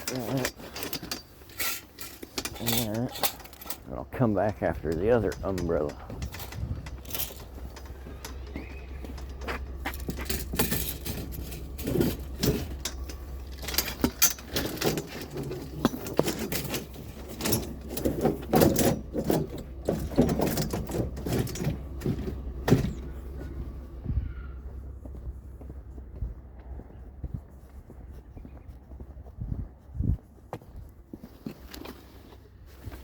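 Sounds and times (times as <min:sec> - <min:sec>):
scrap metal clanking and rattling: 0:00.0 - 0:23.8
steady low hum: 0:00.0 - 0:33.0.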